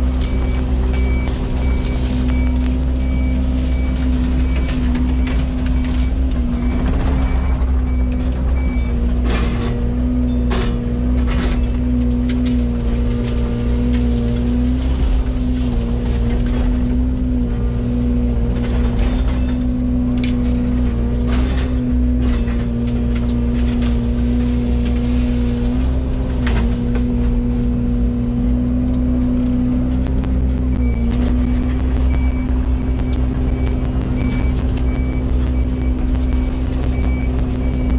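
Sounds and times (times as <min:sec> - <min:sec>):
high beeping: 0:00.0 - 0:08.1, 0:29.9 - 0:37.9
excavator diesel engine running: 0:00.0 - 0:37.9.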